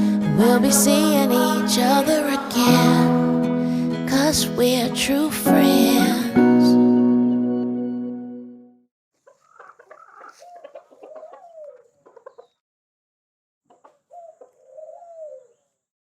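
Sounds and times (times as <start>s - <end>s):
song playing: 0.0s - 8.8s
bird low wavering calls: 9.2s - 12.6s, 13.7s - 15.8s.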